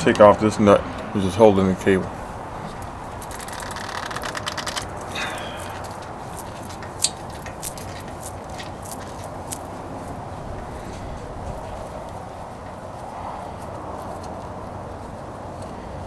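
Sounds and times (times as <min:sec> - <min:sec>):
ratchet wrench clicking: 0:03.2 - 0:09.1.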